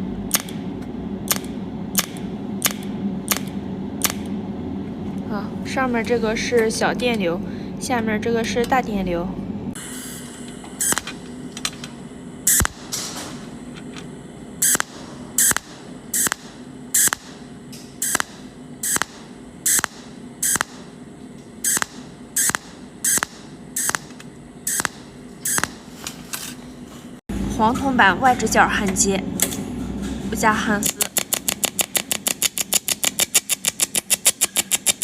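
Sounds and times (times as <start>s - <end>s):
low machine hum: 0.0s - 35.0s
welding machine pulse bursts: 9.8s - 11.6s, 12.2s - 26.0s, 30.8s - 35.0s.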